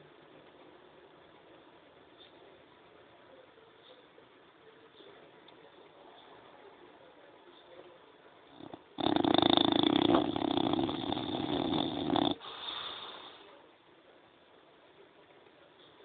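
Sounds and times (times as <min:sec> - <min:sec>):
dog snoring: 0:08.5 - 0:13.4
quiet breath: 0:09.6 - 0:13.7.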